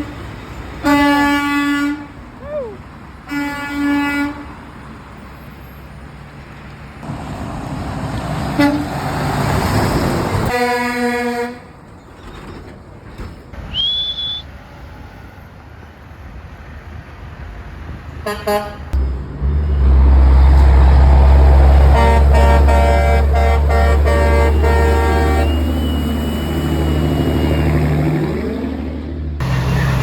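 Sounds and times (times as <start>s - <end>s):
road traffic: 0.0s - 30.0s
truck passing: 0.0s - 30.0s
low engine rumble: 7.0s - 10.5s, 19.0s - 30.0s
car horn honks: 8.6s - 8.9s, 21.8s - 26.7s.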